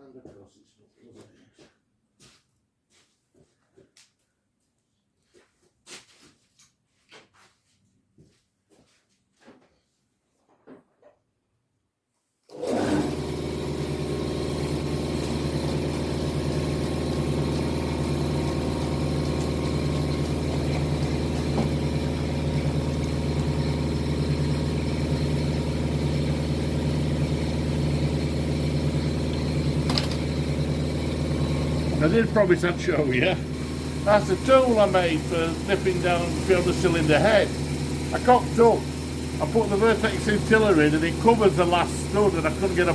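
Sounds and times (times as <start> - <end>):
air compressor humming: 12.5 - 42.9.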